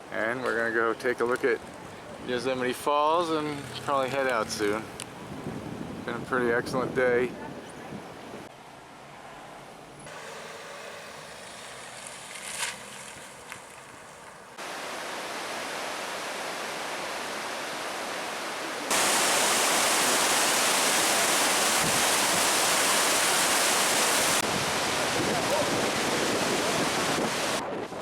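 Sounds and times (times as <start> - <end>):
waterfall rushing: 14.6 - 27.6.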